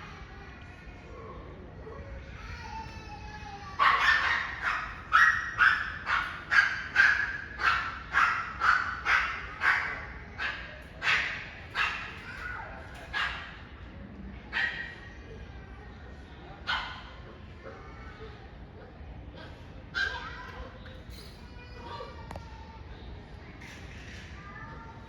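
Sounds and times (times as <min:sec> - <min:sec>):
dog barking: 0:03.8 - 0:12.2, 0:13.1 - 0:13.6.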